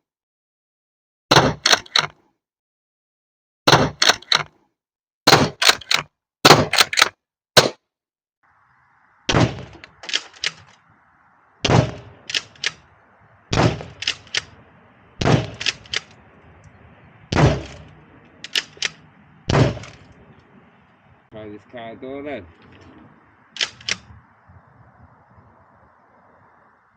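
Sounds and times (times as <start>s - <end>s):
pump racking clicks: 1.3s - 2.1s, 3.7s - 4.5s, 5.3s - 7.1s, 9.8s - 10.8s, 12.3s - 12.8s, 13.6s - 14.5s, 15.2s - 16.8s, 17.4s - 19.0s, 19.6s - 20.2s, 23.6s - 24.1s
air shotgun shots: 5.3s - 7.8s, 9.3s - 10.7s, 11.6s - 12.9s, 13.5s - 14.6s, 15.2s - 16.2s, 17.3s - 20.2s.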